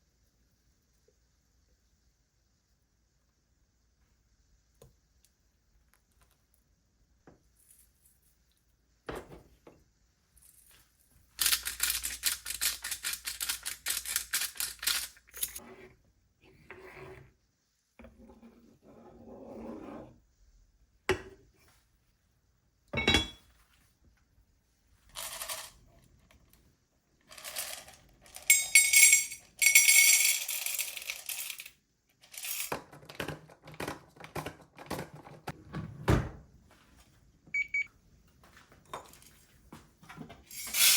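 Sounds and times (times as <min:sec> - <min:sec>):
kitchen knocks and rustles: 0:09.0 - 0:09.9, 0:32.6 - 0:37.2, 0:38.3 - 0:40.8
kitchen utensils clattering: 0:23.0 - 0:23.4, 0:27.5 - 0:31.6, 0:40.5 - 0:40.9.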